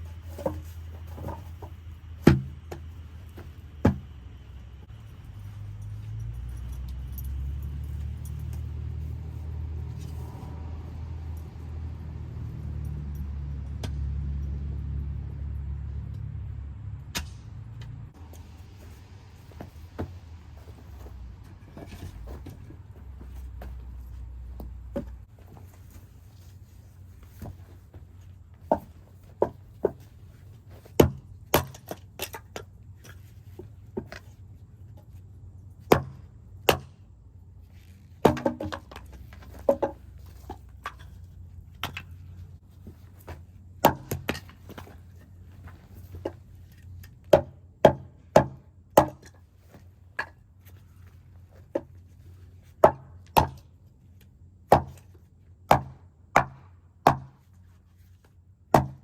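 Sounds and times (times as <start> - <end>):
hatchet chopping wood: 2.2 - 2.9, 3.8 - 4.1, 30.9 - 32.6, 35.9 - 37.0, 38.2 - 41.1, 43.8 - 45.0, 47.2 - 49.4, 52.8 - 53.6, 54.7 - 57.5, 58.7 - 59.0.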